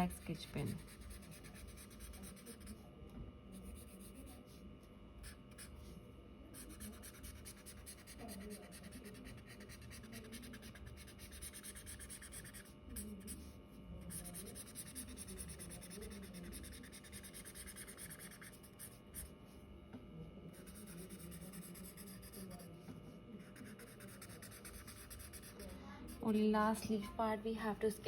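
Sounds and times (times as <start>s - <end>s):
felt-tip pen drawing on paper: 6.6s - 13.5s, 14.1s - 19.3s, 20.6s - 22.6s, 23.4s - 26.2s.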